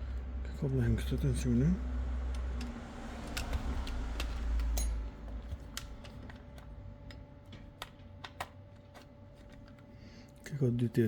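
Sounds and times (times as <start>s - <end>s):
tools and small parts clicking: 2.3s - 9.9s.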